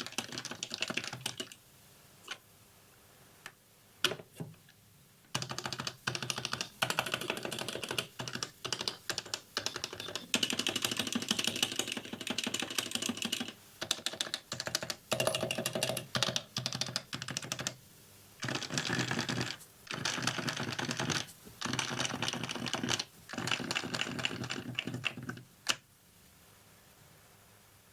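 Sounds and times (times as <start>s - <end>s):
fast keyboard typing: 0.0s - 1.6s, 5.3s - 17.8s, 18.4s - 25.8s.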